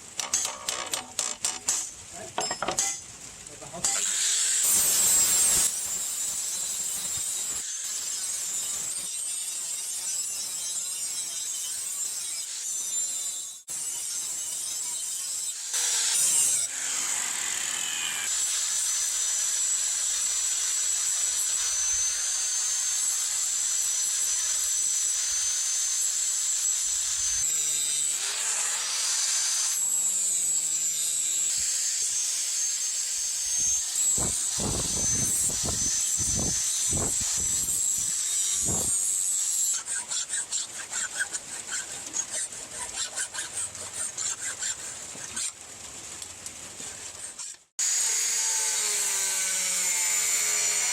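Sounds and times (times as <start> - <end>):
steel grinding on knife blade: 33.5 - 45.6.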